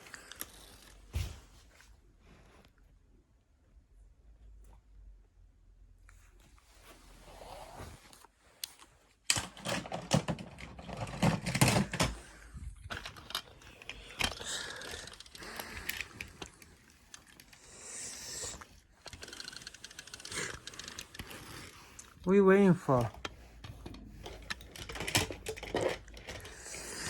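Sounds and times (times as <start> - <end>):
toy cars clicking and clattering: 8.7 - 27.0.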